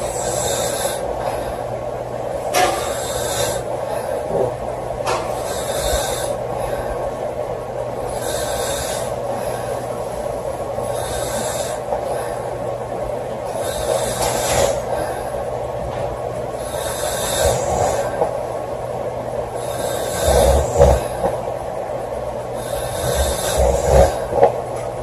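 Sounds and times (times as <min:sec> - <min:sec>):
girl snoring with hissy breaths: 0:00.0 - 0:01.7, 0:02.5 - 0:07.3, 0:08.0 - 0:12.6, 0:13.4 - 0:15.5, 0:16.5 - 0:18.6, 0:19.4 - 0:21.7, 0:22.4 - 0:24.7
steady low hum: 0:00.0 - 0:25.0.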